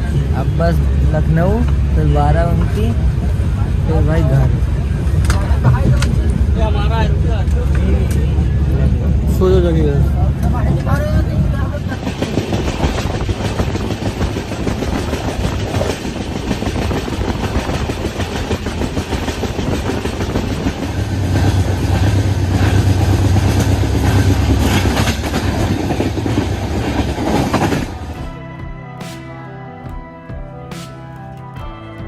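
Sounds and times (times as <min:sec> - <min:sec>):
train wheels rumbling on rails: 0:00.0 - 0:28.3
clacks over rail joints: 0:11.8 - 0:28.0.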